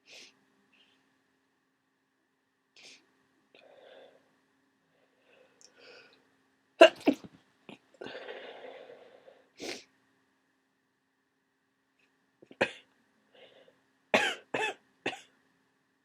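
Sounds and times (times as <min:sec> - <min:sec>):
noisy breathing: 0:02.8 - 0:06.2, 0:08.0 - 0:09.9, 0:13.3 - 0:13.8
person sneezing: 0:06.8 - 0:07.3.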